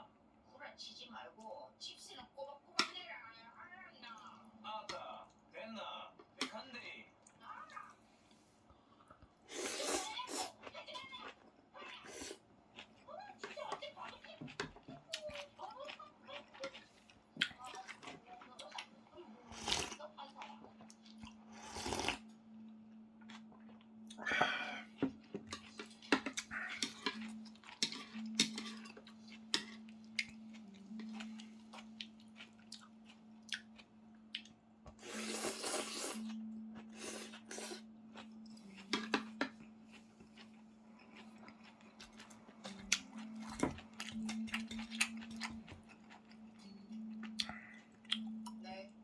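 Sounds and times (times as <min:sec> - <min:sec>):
chewing and slurping noodles: 0:09.4 - 0:10.7, 0:19.5 - 0:20.0, 0:20.8 - 0:22.3, 0:23.3 - 0:48.5.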